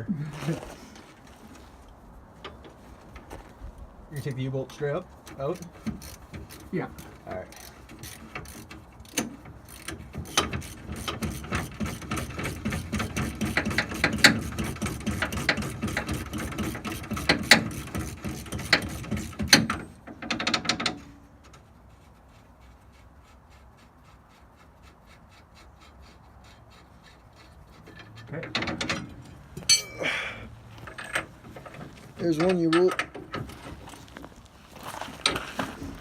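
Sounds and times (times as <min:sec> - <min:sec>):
ratchet wrench clicking: 0:05.6 - 0:19.6.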